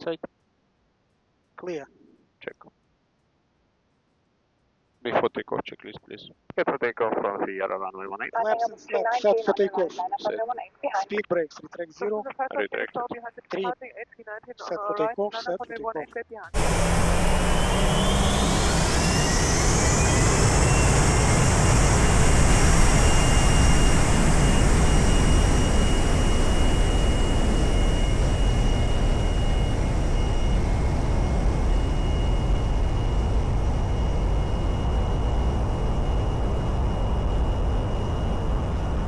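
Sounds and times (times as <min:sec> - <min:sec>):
jet engine roar: 0:16.5 - 0:39.0
jet engine whine: 0:16.5 - 0:39.0.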